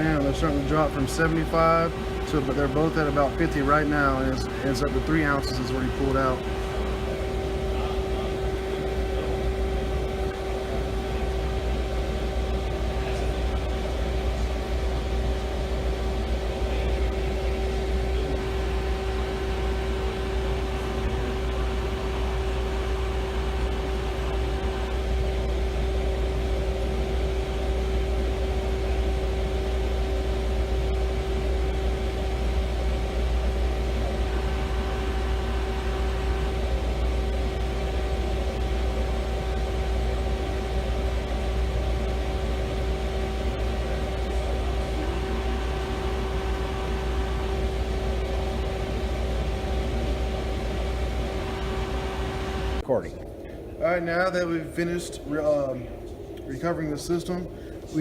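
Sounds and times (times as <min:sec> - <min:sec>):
machine compressor humming: 0:00.0 - 0:58.0.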